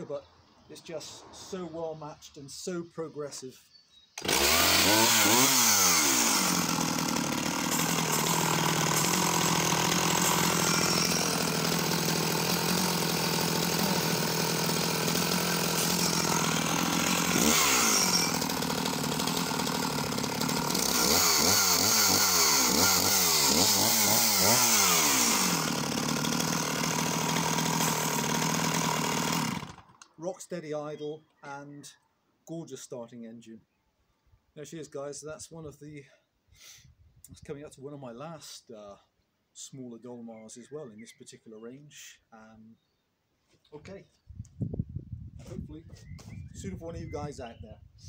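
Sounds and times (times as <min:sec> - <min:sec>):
chainsaw engine idling and revving: 0:04.2 - 0:30.1.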